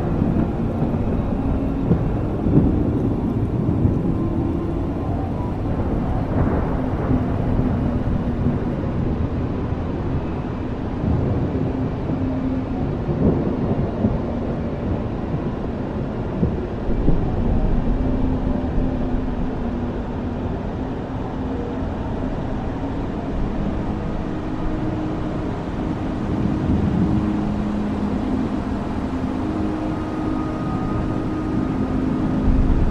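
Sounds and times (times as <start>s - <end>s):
steady rain: 0.0s - 32.9s.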